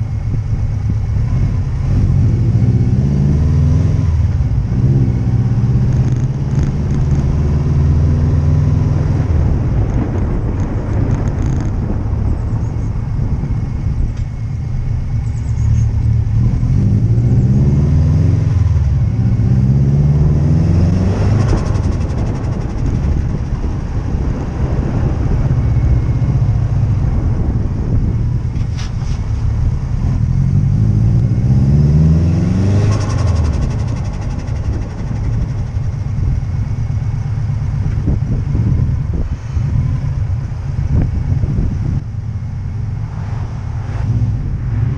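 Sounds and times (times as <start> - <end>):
car engine revving: 1.1 - 40.2
turbo flutter: 9.2 - 14.4, 20.8 - 29.5, 32.5 - 37.2.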